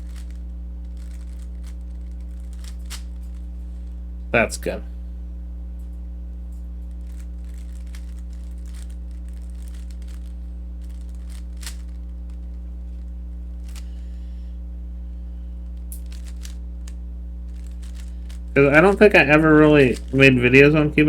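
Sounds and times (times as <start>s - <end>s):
puzzle cube clicking: 0.0s - 3.1s, 9.6s - 12.0s, 15.9s - 16.6s, 17.6s - 20.4s
electrical hum: 0.0s - 21.0s.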